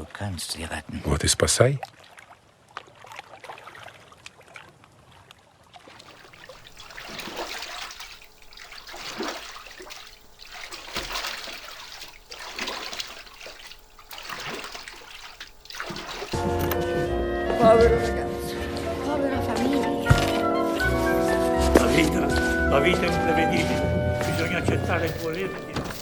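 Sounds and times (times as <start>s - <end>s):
water sloshing and splashing: 1.8s - 16.7s, 24.2s - 26.0s.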